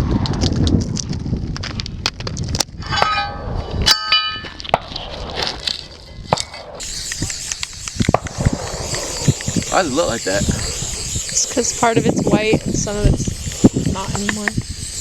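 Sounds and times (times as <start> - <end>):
ringing metallic clang: 2.8 - 4.6
aerosol spray can hissing: 6.8 - 15.0.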